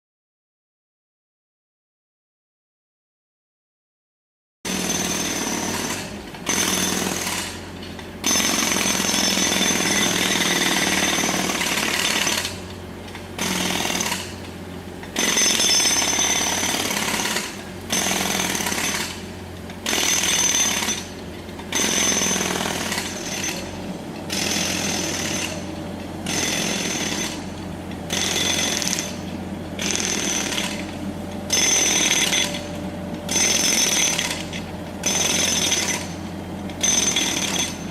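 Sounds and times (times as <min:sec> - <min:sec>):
jackhammer hammering road: 0:04.7 - 0:37.9
steady low hum: 0:22.8 - 0:36.9.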